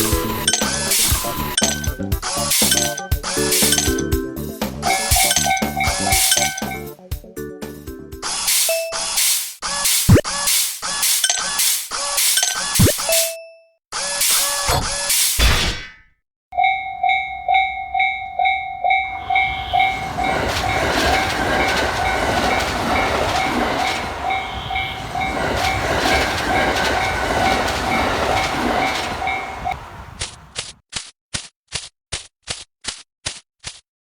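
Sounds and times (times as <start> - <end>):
railway crossing alarm ringing: 0.0 - 4.1, 4.8 - 6.9, 16.5 - 30.6
train rumble and wheel clatter: 0.0 - 7.0, 16.6 - 30.8.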